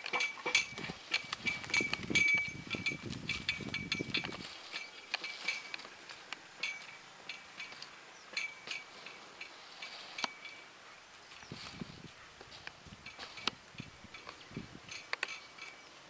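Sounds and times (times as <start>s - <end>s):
small metal bells jingling: 0.1s - 5.9s, 6.6s - 10.7s.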